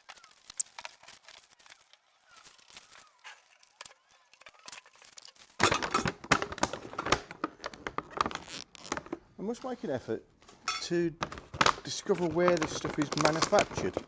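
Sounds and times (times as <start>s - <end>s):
plastic film peeling crackling: 0.0s - 9.8s, 10.5s - 14.0s
film rustling: 0.0s - 14.0s.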